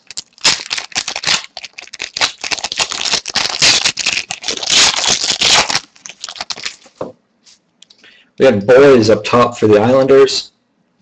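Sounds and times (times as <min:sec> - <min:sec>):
foil wrapper tearing and crinkling: 0:00.0 - 0:07.0.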